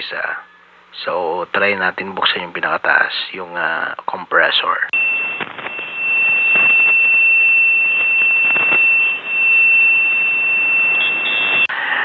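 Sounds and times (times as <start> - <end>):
radio static hiss: 0.0 - 12.0
high-pitched whistle: 5.0 - 11.7.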